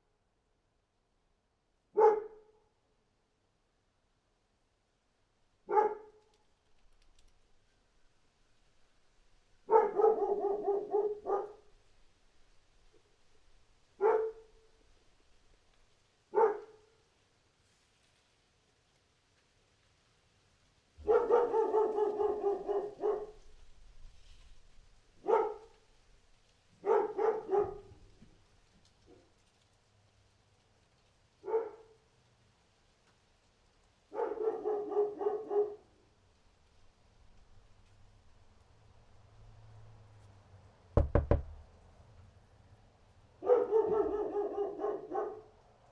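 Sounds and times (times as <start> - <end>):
dog barking: 1.9 - 2.6, 5.7 - 6.2, 9.6 - 11.7, 14.0 - 14.7, 16.3 - 17.0, 21.0 - 23.6, 25.2 - 25.8, 26.8 - 28.1, 31.4 - 32.1, 34.1 - 36.0, 43.4 - 45.6.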